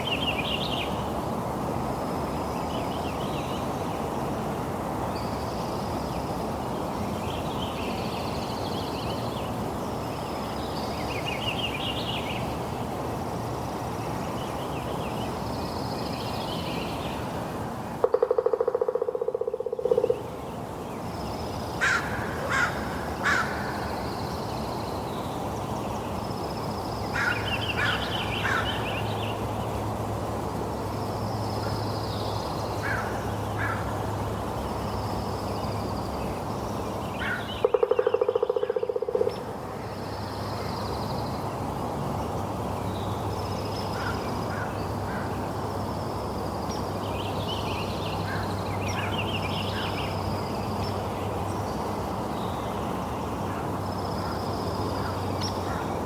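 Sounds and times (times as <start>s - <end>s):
birds calling: 21.8s - 23.9s, 27.1s - 29.2s, 37.2s - 39.5s.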